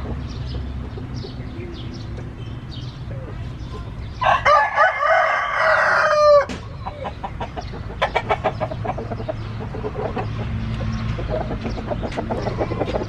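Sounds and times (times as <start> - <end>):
rooster crowing: 4.2 - 7.0
rapid clucks: 6.5 - 13.0.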